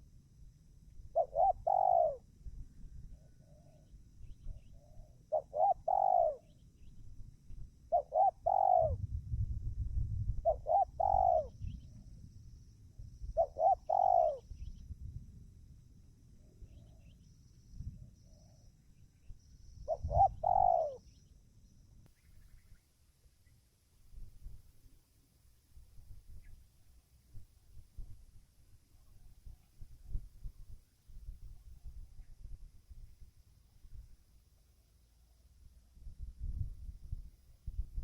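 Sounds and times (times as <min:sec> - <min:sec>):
dove cooing: 0:01.1 - 0:02.3, 0:04.4 - 0:06.5, 0:07.9 - 0:09.0, 0:10.4 - 0:11.6, 0:13.4 - 0:14.5, 0:19.9 - 0:21.0.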